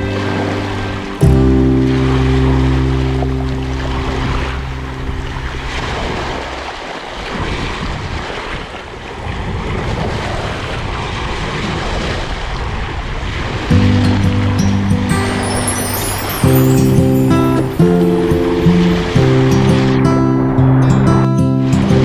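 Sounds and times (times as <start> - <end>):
held music notes: 0.0 - 6.7, 13.7 - 22.0
sea waves washing: 0.0 - 7.5, 13.6 - 22.0.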